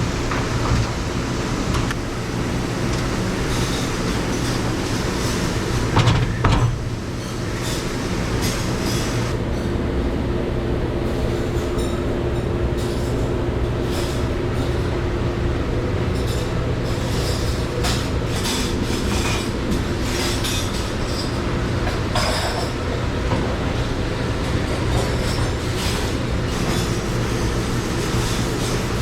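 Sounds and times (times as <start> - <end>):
dishes clattering: 2.7 - 9.3, 20.2 - 23.6
plates and silverware clinking: 20.2 - 22.8.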